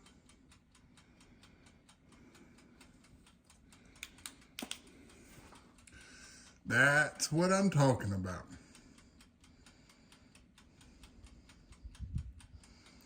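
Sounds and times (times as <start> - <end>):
louder timer clicks: 0.0 - 5.2
wind-up timer ticking: 0.0 - 13.0.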